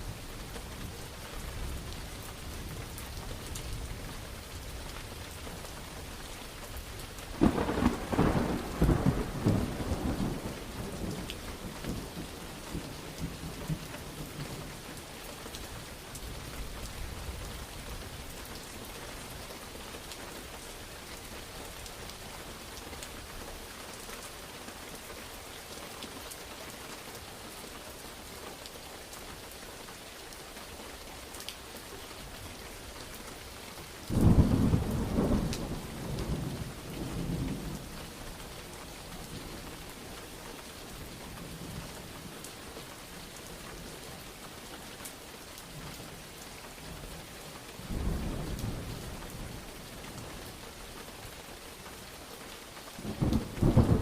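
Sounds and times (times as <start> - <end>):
thunder rumbling: 7.3 - 14.4, 34.1 - 37.9, 53.0 - 54.0
loud thunderclap: 7.4 - 11.1, 53.0 - 54.0
heavy rain hissing: 53.0 - 54.0.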